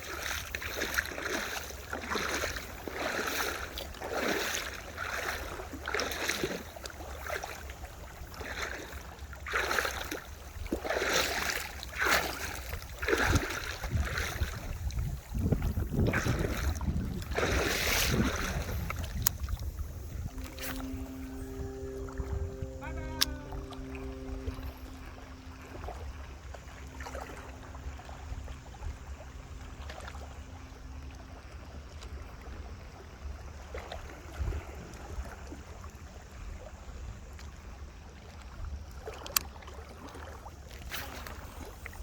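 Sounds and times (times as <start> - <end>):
water swishing and splashing: 0.0 - 35.7
wind rumble on microphone: 12.7 - 26.1.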